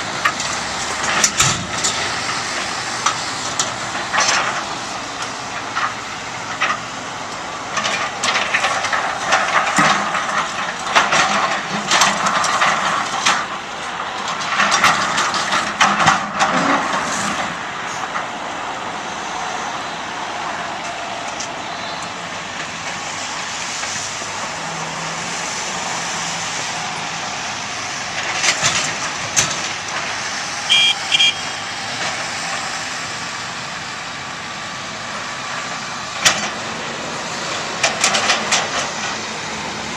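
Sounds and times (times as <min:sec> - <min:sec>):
heavy construction machinery running: 0:00.0 - 0:39.9.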